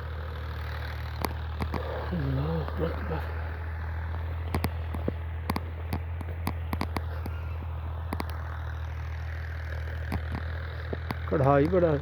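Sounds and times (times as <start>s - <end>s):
low engine hum: 0.0s - 12.0s
sharp clicks: 4.0s - 8.7s, 9.7s - 11.8s.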